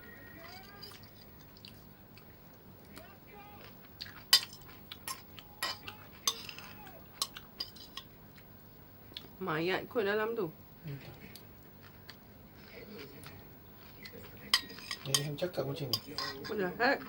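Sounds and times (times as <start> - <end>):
faint voices: 0.0 - 1.3, 2.8 - 3.9, 5.2 - 7.2
utensils clinking on plate: 4.3 - 8.1, 13.9 - 16.7.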